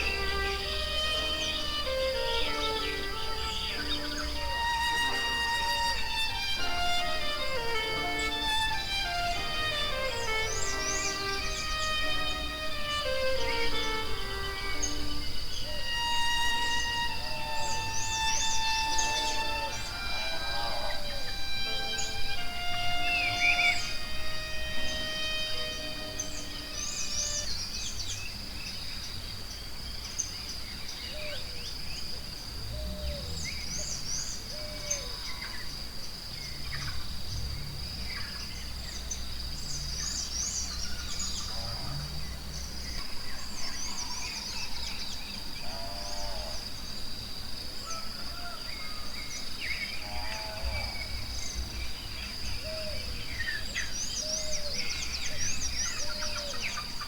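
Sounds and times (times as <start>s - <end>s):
high insect buzz: 0.0s - 28.3s
birds chirping and trilling: 0.0s - 57.0s
low drawn-out animal call: 19.1s - 24.0s, 41.4s - 42.6s, 45.4s - 46.7s, 50.0s - 51.4s.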